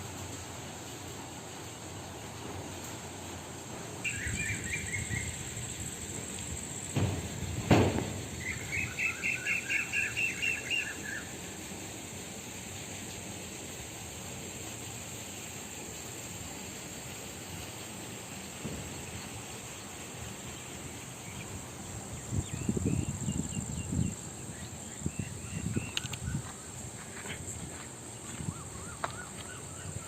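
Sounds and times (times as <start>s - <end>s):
insects buzzing: 0.0s - 30.0s
bird chirping: 4.0s - 6.1s, 8.4s - 11.2s, 22.2s - 30.0s
sharp thumps: 6.8s - 8.5s.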